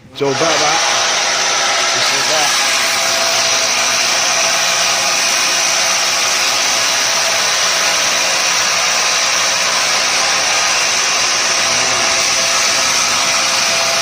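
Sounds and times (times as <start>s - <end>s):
lathe whirring: 0.0s - 14.0s.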